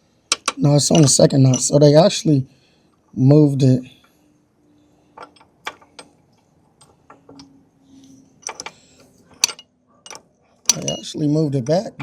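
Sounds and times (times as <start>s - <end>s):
tools clicking on metal: 0.3s - 1.8s, 5.2s - 11.8s.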